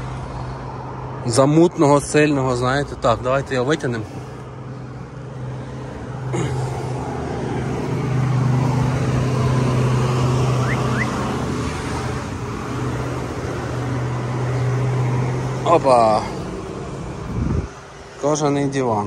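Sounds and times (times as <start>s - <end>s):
road traffic noise: 0.0s - 19.0s
vehicle humming: 0.0s - 19.0s.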